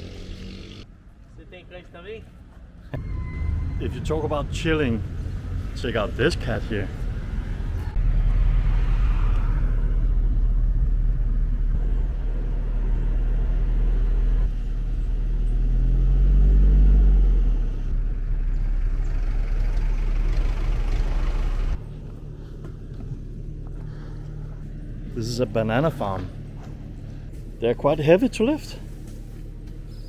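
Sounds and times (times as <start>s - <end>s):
vehicle engine and road rumble: 0.0s - 30.0s.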